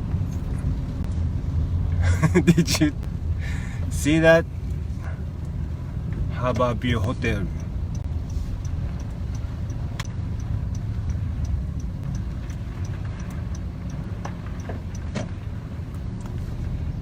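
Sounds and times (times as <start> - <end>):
engine and road rumble: 0.0 - 17.0
faint high ticking: 4.7 - 15.1.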